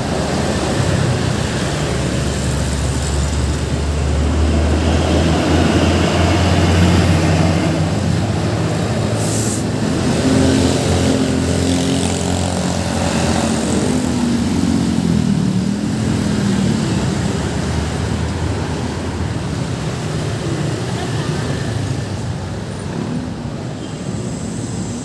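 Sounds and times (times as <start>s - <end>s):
heavy vehicle engine humming: 0.0s - 25.0s
short hiss: 9.2s - 9.7s.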